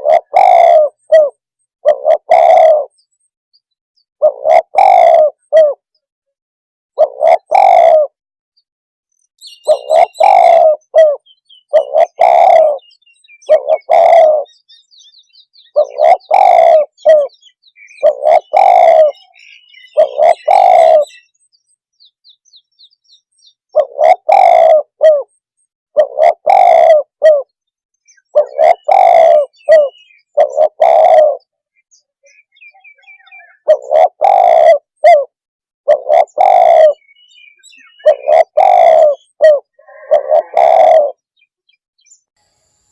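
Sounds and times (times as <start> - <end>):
dove cooing: 0.0 - 3.0, 4.2 - 5.9, 7.0 - 8.2, 9.6 - 15.0, 15.6 - 21.3, 23.7 - 27.5, 28.1 - 31.6, 32.3 - 41.4
small birds chirping: 0.0 - 6.1, 9.1 - 35.2, 35.9 - 42.9.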